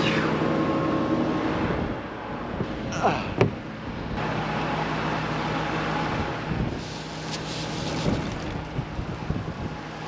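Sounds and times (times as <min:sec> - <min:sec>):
engine running: 0:03.6 - 0:10.0
wind on microphone: 0:06.2 - 0:09.8.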